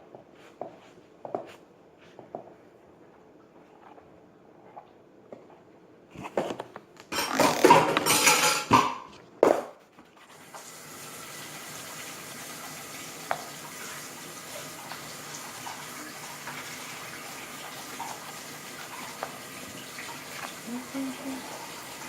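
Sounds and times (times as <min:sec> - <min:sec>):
dishes and utensils clattering: 0:07.1 - 0:09.2
water running into a sink: 0:10.3 - 0:22.0.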